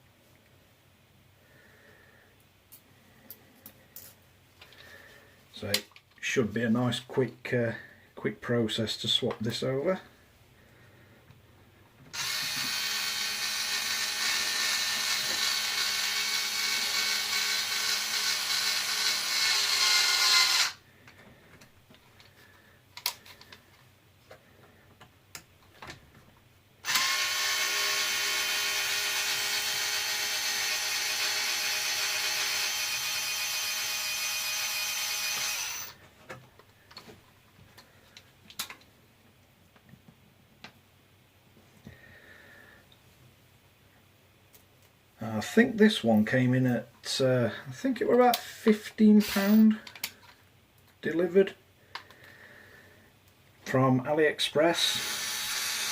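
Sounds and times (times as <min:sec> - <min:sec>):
electric screwdriver whirring: 0:12.2 - 0:20.8, 0:26.8 - 0:36.0, 0:54.9 - 0:55.9.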